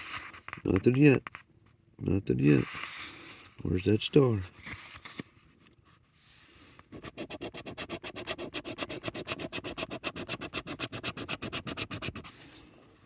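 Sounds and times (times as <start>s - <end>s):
lottery ticket being scratched: 7.1s - 12.2s.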